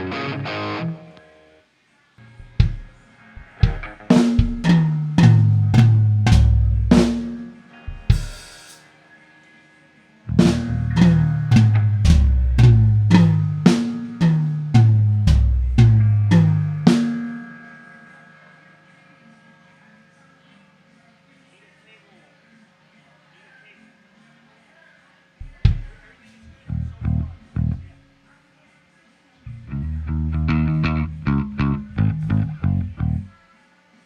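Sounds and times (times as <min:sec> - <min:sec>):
drum toms struck: 0:02.5 - 0:08.7, 0:10.4 - 0:17.4.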